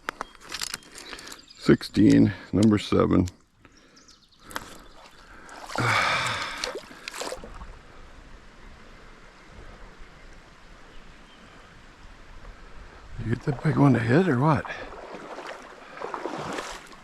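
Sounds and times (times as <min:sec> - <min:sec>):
stream flowing: 0:04.6 - 0:08.0, 0:13.2 - 0:17.0.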